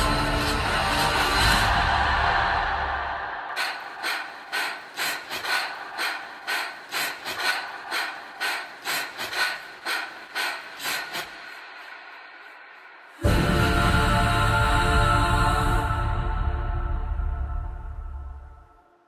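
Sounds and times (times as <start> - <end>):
rapid rasping breaths: 0.0 - 14.8.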